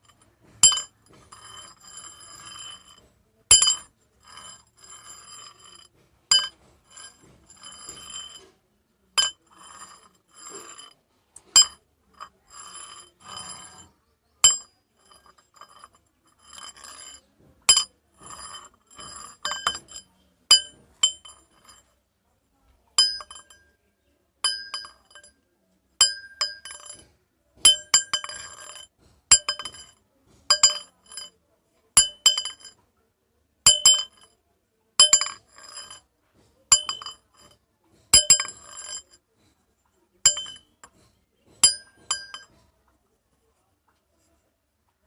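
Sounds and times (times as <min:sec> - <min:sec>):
metal rods clinking: 0:00.0 - 0:08.6, 0:09.2 - 0:21.9, 0:40.3 - 0:41.0, 0:41.6 - 0:42.6
metal scraping and rubbing: 0:00.0 - 0:22.0.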